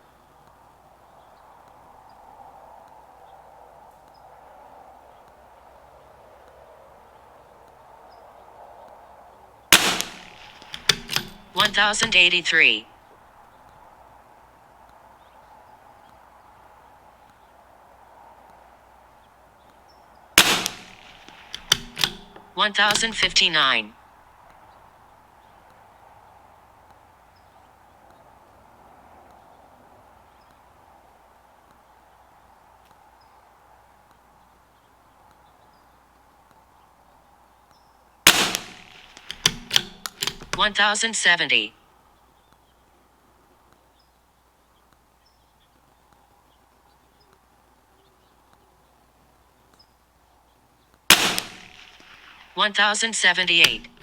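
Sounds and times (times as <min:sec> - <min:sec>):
rifle shot with echo: 0:09.7 - 0:12.8, 0:20.4 - 0:23.8, 0:38.3 - 0:41.0, 0:51.1 - 0:54.0.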